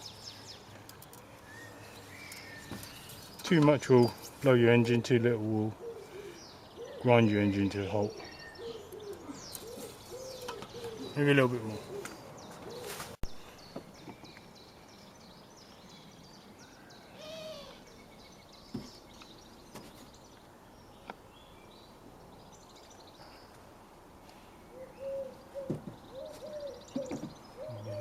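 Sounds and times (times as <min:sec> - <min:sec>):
birdsong with high chirps: 0:00.0 - 0:28.0
pigeon cooing: 0:05.7 - 0:07.3, 0:08.0 - 0:13.2, 0:17.2 - 0:17.8, 0:24.7 - 0:28.0.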